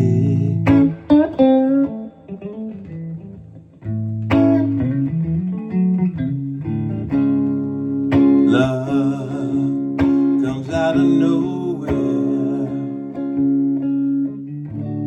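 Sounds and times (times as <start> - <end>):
person singing: 0.0 - 1.4, 8.4 - 13.4
guitar playing: 0.0 - 15.0.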